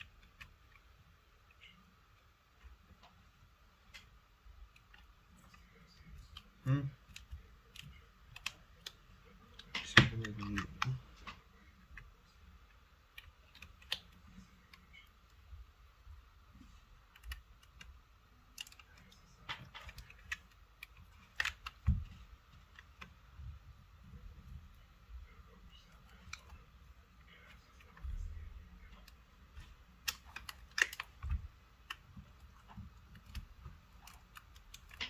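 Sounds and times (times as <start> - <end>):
light clicks and taps: 16.0 - 35.0.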